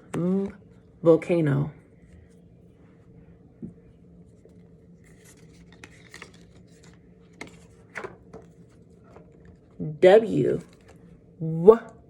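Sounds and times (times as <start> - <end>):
steady low hum: 0.0 - 12.0
soft rustles and scratches: 4.2 - 9.8.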